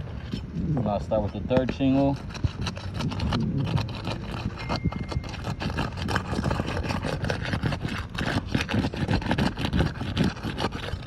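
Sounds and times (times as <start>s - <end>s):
roof shingles scraping and crackling: 1.1s - 11.0s.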